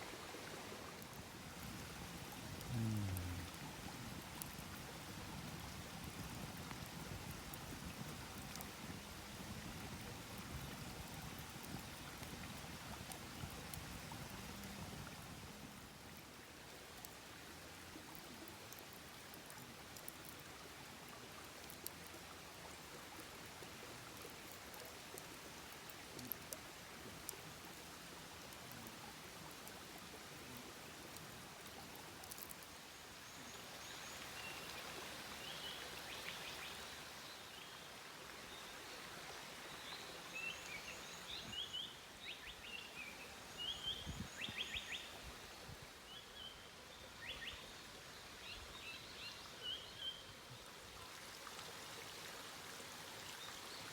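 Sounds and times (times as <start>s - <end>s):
stream flowing: 0.0s - 53.9s.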